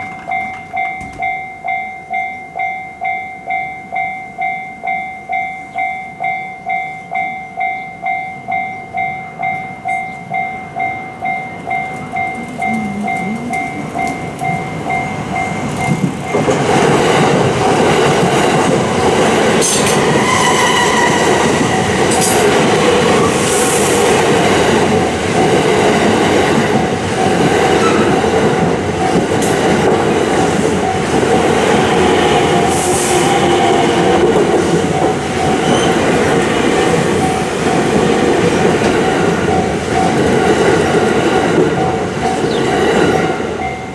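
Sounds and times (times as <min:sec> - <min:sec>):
level-crossing alarm chime: 0:00.0 - 0:16.6
train wheels rushing and clattering: 0:11.2 - 0:43.9.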